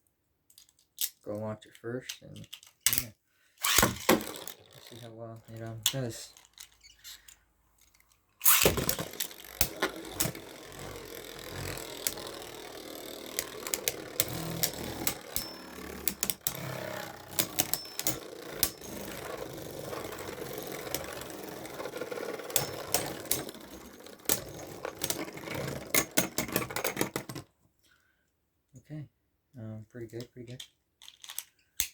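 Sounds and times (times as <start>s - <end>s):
tops clacking together: 2.4s - 6.8s, 8.4s - 27.4s
spinning tops whirring: 3.6s - 6.7s, 8.4s - 27.4s.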